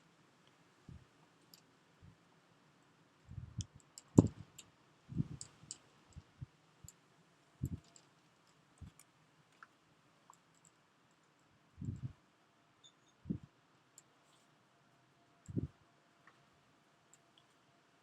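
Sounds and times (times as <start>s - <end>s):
small clicks: 1.4s - 1.7s, 5.3s - 7.0s, 7.6s - 12.1s.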